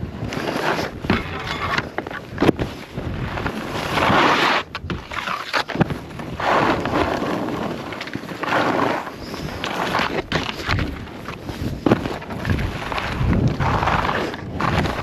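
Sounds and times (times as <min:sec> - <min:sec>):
wind buffeting microphone: 0:00.0 - 0:05.2, 0:09.2 - 0:15.0
skis scraping over snow: 0:00.0 - 0:15.0.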